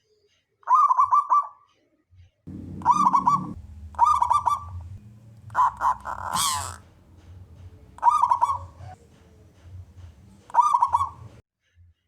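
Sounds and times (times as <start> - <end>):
dove cooing: 2.5 - 11.4.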